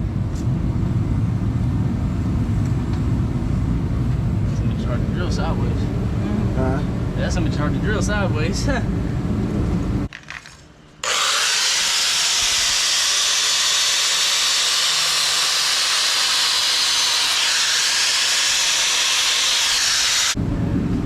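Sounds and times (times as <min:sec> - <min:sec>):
power drill whirring: 0:11.0 - 0:20.4.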